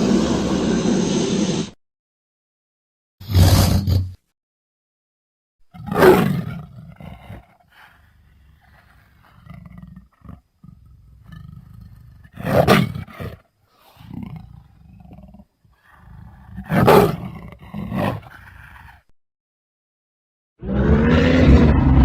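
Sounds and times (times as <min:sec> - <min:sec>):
loud creature roars: 0:05.7 - 0:19.0, 0:20.6 - 0:22.0
low growling rumbles: 0:20.6 - 0:22.0.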